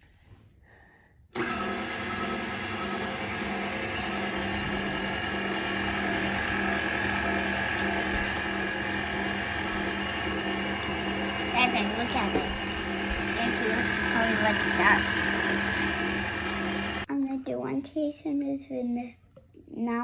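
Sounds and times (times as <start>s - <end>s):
stand mixer whirring: 1.4s - 17.1s.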